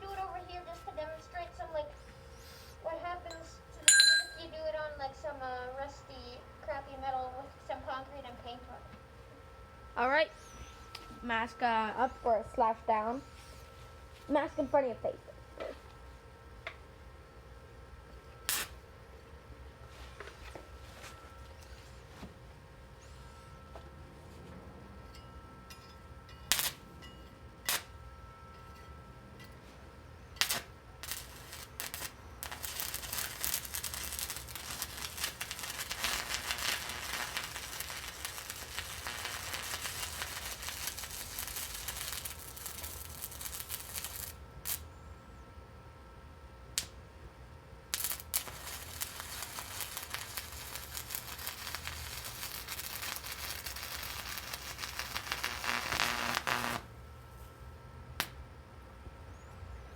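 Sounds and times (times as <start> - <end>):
arc welder crackling sizzle: 0.0 - 8.8, 18.0 - 22.8, 26.3 - 28.5, 30.3 - 45.0, 46.7 - 47.1, 47.8 - 58.4.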